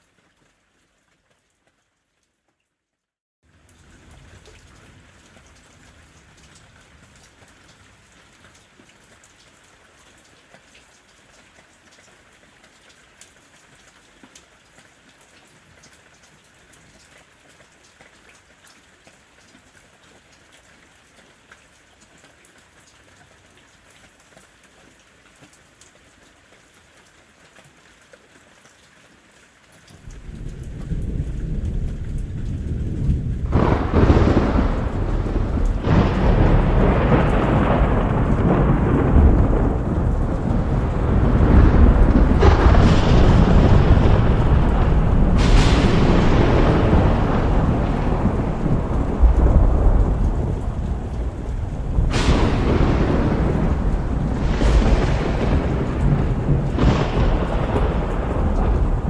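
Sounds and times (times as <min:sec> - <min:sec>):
steady rain: 0:00.0 - 0:02.6, 0:03.4 - 0:59.0
low rumble of thunder: 0:30.0 - 0:59.0.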